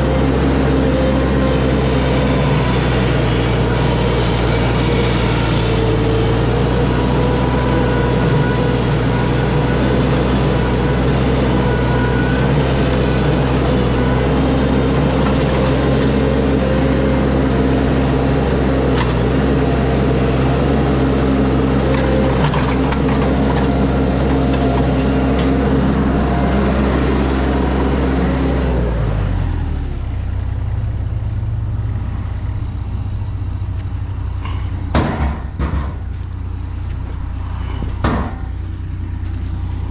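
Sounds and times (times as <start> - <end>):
heavy engine running: 0.0 - 39.9.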